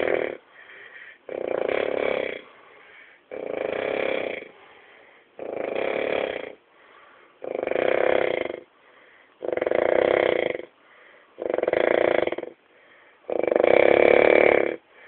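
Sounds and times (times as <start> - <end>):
loud rattling snores: 0.0 - 0.4, 1.3 - 2.5, 3.3 - 4.6, 5.4 - 6.6, 7.4 - 8.7, 9.4 - 10.7, 11.4 - 12.6, 13.2 - 14.8
quiet breath: 0.0 - 1.5, 2.1 - 3.3, 4.4 - 5.4, 6.6 - 7.4, 8.6 - 9.4, 10.6 - 11.4, 12.5 - 13.3, 14.8 - 15.0.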